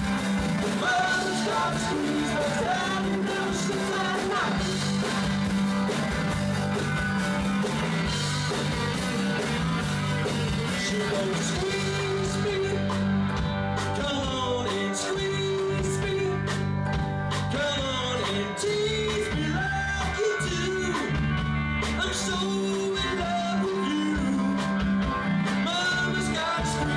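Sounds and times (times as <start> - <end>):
live rock band: 0.0 - 26.9
person singing: 0.6 - 5.3, 10.6 - 13.1, 13.8 - 16.7, 17.3 - 24.8, 25.5 - 26.9.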